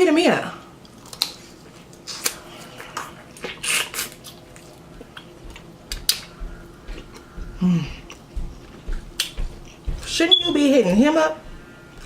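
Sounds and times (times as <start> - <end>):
eating noises: 0.8 - 10.0.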